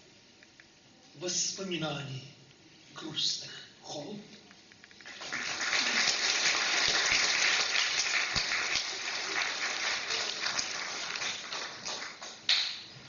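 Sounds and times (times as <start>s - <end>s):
audience applauding: 5.0s - 12.9s.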